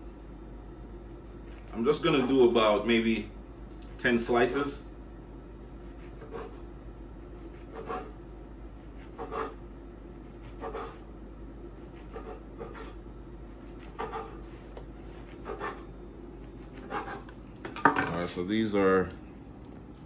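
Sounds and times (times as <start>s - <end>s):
knife sawing through bread: 1.4s - 2.6s, 5.8s - 11.0s, 11.8s - 17.3s.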